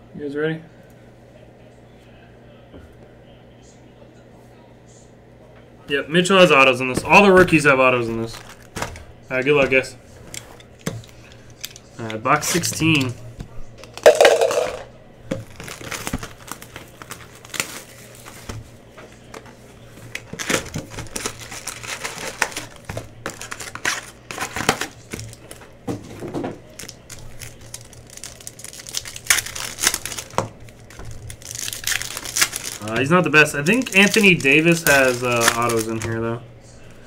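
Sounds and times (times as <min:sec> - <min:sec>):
plastic wrapping crinkling and tearing: 0:07.1 - 0:13.2, 0:15.4 - 0:36.3.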